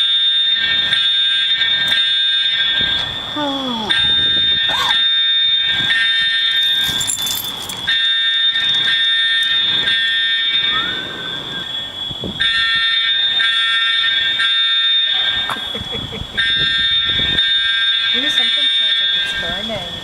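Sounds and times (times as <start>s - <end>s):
buzzy fire alarm blasts: 0.0s - 20.0s
steady high-pitched alarm tone: 0.0s - 20.0s.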